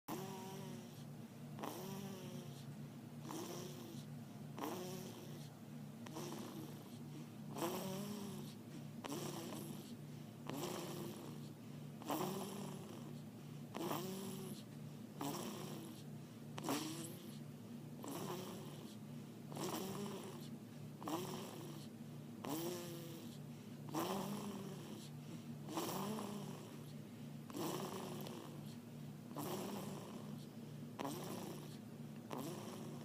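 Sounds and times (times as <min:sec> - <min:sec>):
snoring: 0:00.1 - 0:17.4, 0:18.0 - 0:33.0.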